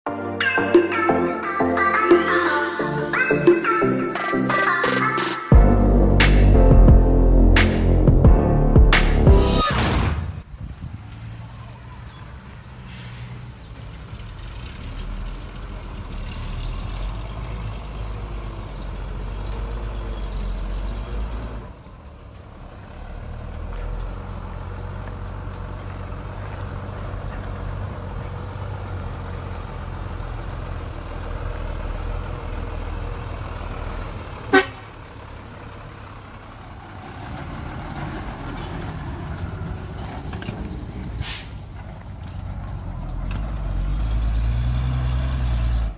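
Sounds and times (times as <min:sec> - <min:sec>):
heavy diesel engines rumbling: 0:01.8 - 0:45.9
vehicle horn toot: 0:34.5 - 0:34.9.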